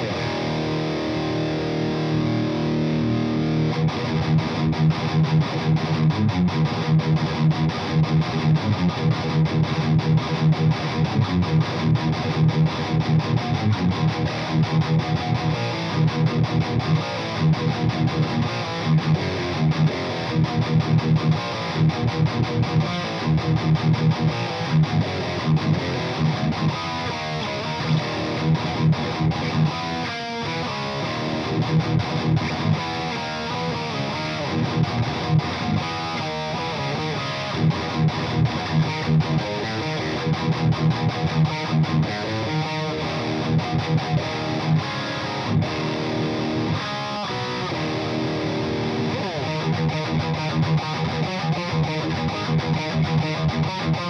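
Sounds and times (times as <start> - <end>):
distorted electric guitar riffs: 0.0 - 54.0.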